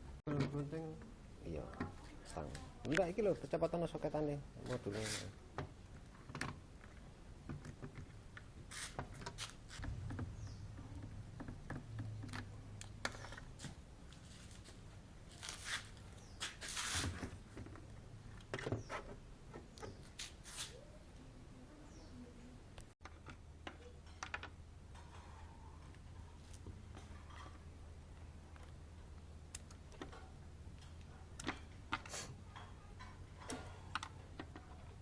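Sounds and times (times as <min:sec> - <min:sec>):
hands clicking and tapping connectors: 0:28.2 - 0:32.1, 0:33.0 - 0:34.8.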